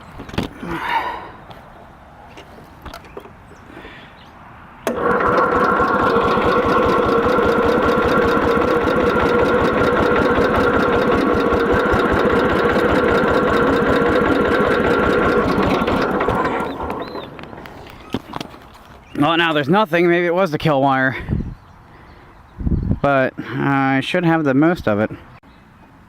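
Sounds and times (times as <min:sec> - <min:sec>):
mower engine cranking: 0:04.8 - 0:18.7.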